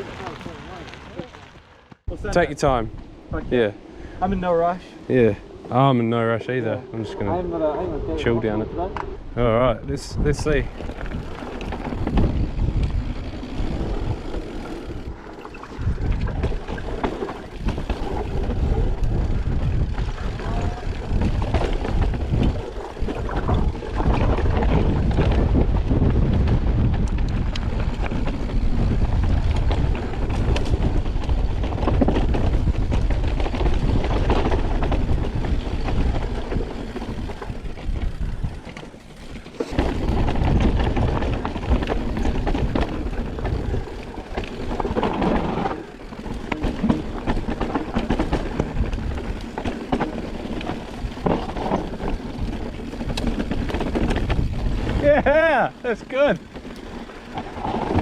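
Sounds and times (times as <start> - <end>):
bike tyres rumbling on dirt: 0.0 - 58.0
wind buffeting microphone: 2.1 - 58.0.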